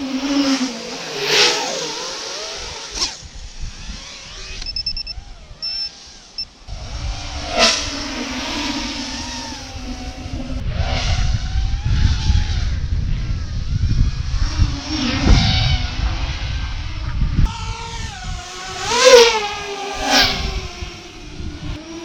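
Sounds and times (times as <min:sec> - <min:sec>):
drone motors whining: 0:00.0 - 0:22.0
wind rumble on microphone: 0:02.5 - 0:05.6, 0:06.7 - 0:22.0
drone fly-by swooshes: 0:06.0 - 0:22.0.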